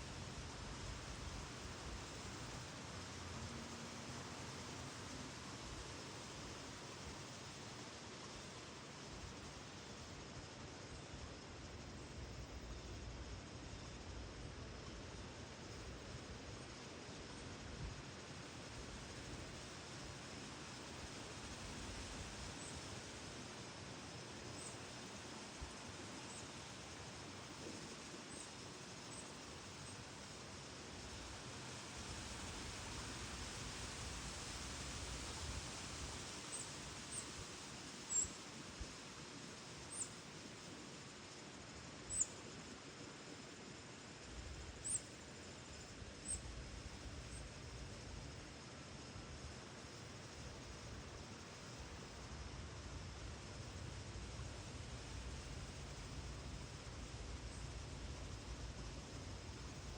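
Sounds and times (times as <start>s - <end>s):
steady outdoor hiss: 0.0s - 59.9s
wind through tree leaves: 0.0s - 59.9s
small bird chirping: 42.1s - 42.3s.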